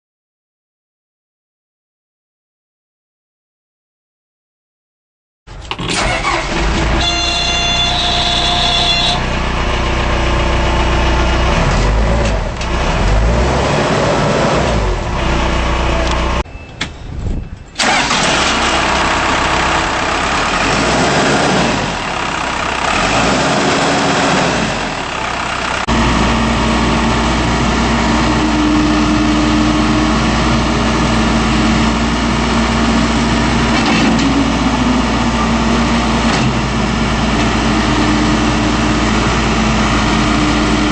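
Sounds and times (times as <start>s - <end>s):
backhoe diesel engine running: 5.5s - 16.6s, 17.7s - 40.9s.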